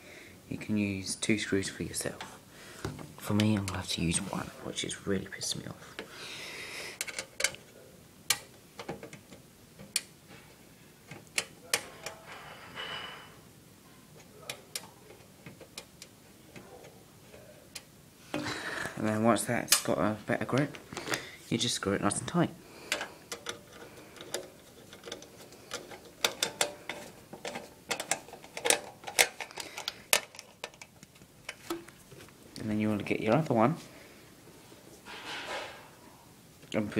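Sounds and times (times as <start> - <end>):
screwdriver clicking on metal: 22.9 - 30.9.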